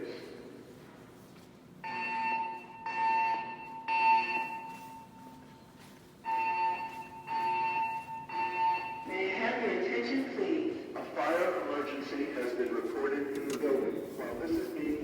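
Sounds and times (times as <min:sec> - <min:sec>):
fire alarm pulsing tone: 0:01.8 - 0:05.4, 0:06.2 - 0:09.1.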